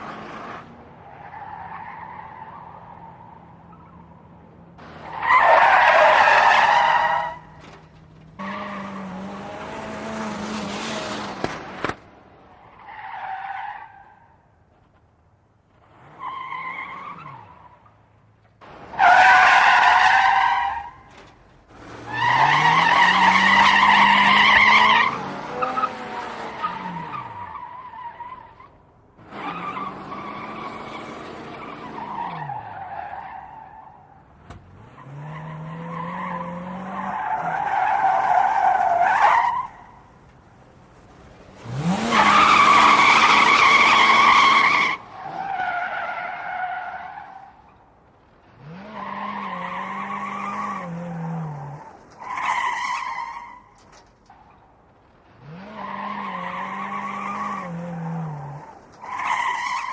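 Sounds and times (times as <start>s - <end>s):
car tyres squealing: 0.0s - 59.9s
car engine revving: 4.8s - 12.0s, 40.0s - 45.5s.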